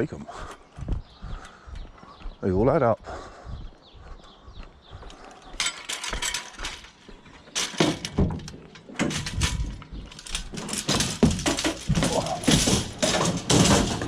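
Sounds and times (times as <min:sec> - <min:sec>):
scrap metal clanking: 0:05.6 - 0:14.0.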